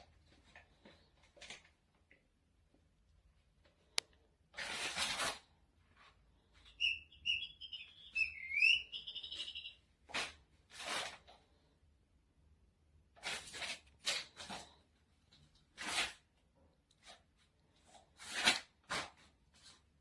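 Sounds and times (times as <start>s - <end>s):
electronic mouse squeaks: 6.7s - 9.8s.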